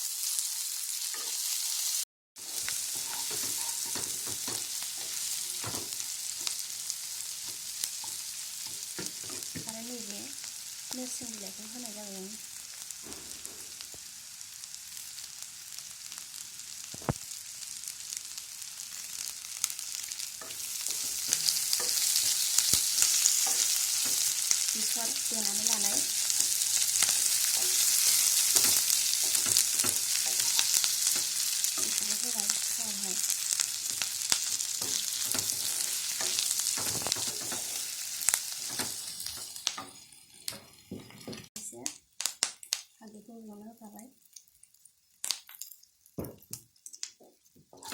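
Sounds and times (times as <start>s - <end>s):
onion sizzling in hot oil: 0.0s - 47.9s
spoon scraping a pan: 1.1s - 1.8s, 2.4s - 9.7s, 19.9s - 41.5s.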